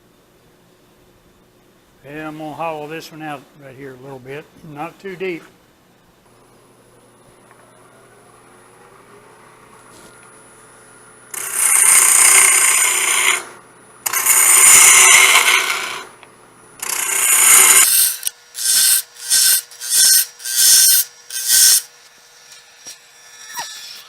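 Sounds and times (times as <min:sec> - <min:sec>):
wood lathe running: 0:11.3 - 0:16.1, 0:16.8 - 0:24.0
lathe tool scraping wood: 0:11.4 - 0:13.5, 0:14.1 - 0:16.1, 0:16.8 - 0:24.0.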